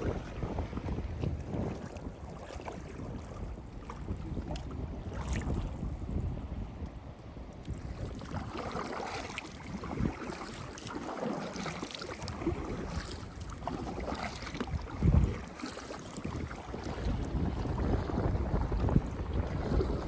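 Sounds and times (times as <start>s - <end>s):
paddles splashing in water: 0.0s - 6.3s, 7.6s - 20.0s
wind buffeting microphone: 0.0s - 20.0s.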